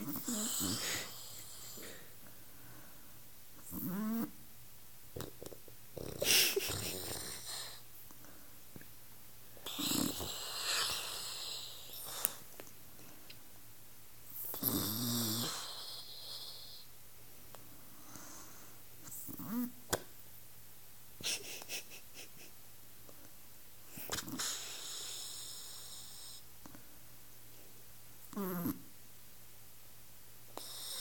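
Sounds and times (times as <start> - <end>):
woman snoring: 0.0 - 2.1, 3.6 - 4.4, 6.0 - 7.8, 9.6 - 12.0, 14.5 - 16.9.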